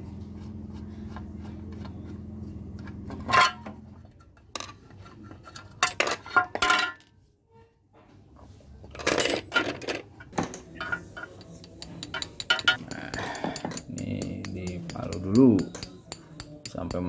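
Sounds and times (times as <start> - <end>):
steady low hum: 0.0 - 5.6
metal parts clinking and knocking: 4.4 - 7.1, 8.9 - 13.0.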